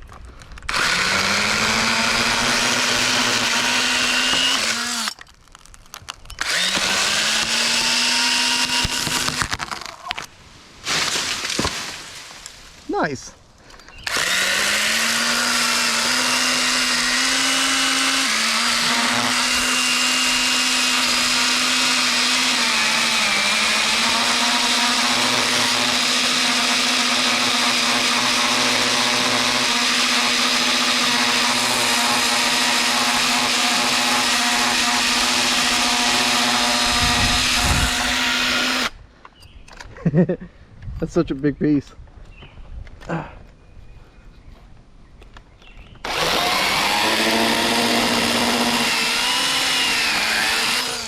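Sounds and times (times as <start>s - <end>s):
electric saw whining: 0.7s - 5.2s, 6.4s - 9.6s, 14.0s - 38.9s, 46.0s - 51.0s.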